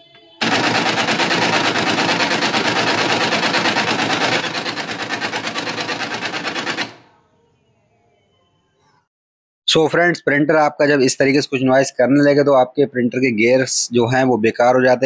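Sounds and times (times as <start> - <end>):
printer gears rattling: 0.4 - 7.1.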